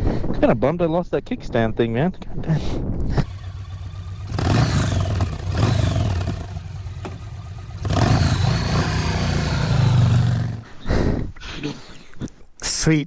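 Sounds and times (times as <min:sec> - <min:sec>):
motorcycle engine revving: 0:03.1 - 0:10.7.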